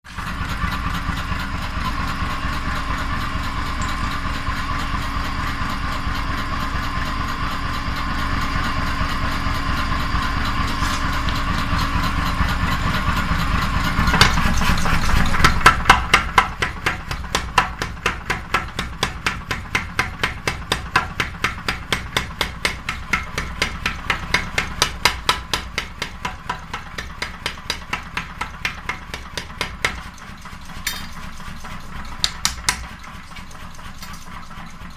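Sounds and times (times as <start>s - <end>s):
machine running with fast ticking: 0.1s - 34.9s
hammer striking metal: 14.0s - 30.1s, 30.8s - 31.2s, 32.1s - 33.0s.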